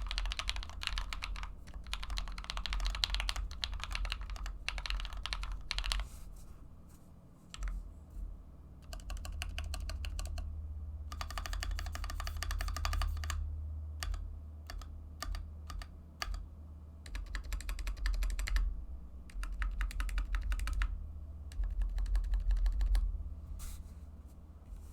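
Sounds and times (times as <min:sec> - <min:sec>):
mechanical keyboard typing: 0:00.0 - 0:06.1, 0:07.5 - 0:07.8, 0:08.8 - 0:10.5, 0:11.1 - 0:13.4, 0:14.0 - 0:16.4, 0:17.0 - 0:18.7, 0:19.3 - 0:23.1.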